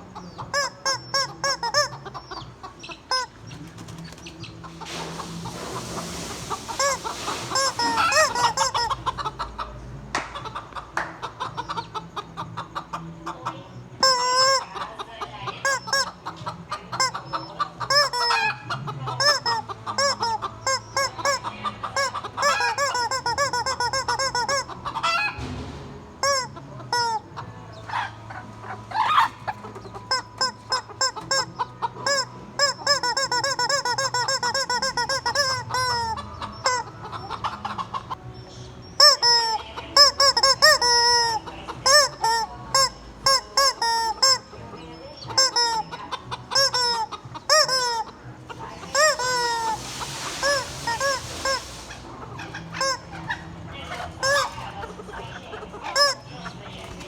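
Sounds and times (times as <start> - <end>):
rubber chicken toy squawking: 0.0 - 3.5, 6.7 - 9.6, 14.0 - 25.4, 26.2 - 38.2, 39.0 - 57.0
long breathy hiss: 4.9 - 8.2, 49.5 - 52.1.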